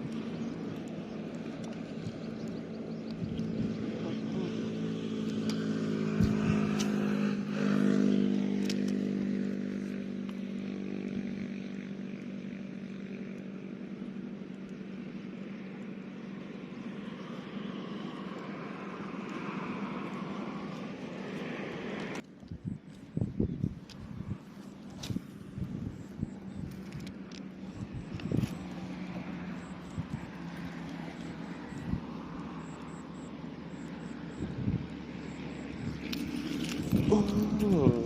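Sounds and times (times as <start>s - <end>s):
vehicle engine passing: 0.0s - 13.1s, 24.0s - 38.0s.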